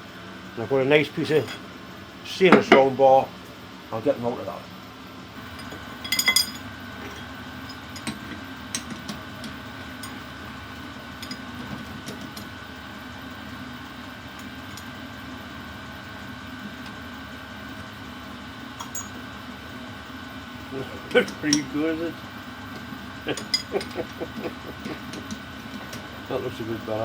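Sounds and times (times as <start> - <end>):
steady hum: 0.0 - 27.0
ringing metallic clinks: 5.5 - 6.6, 18.8 - 19.2, 23.4 - 24.0.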